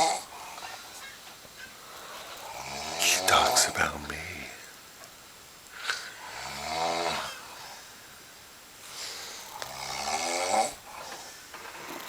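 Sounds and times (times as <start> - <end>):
rasping snores: 9.5 - 10.8.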